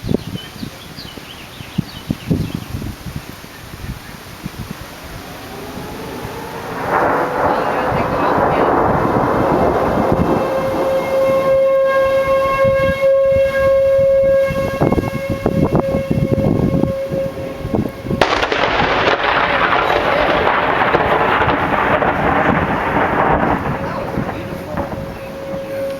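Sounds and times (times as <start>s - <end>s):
tornado warning siren: 1.8s - 25.9s
loud thunderclap: 3.7s - 25.9s.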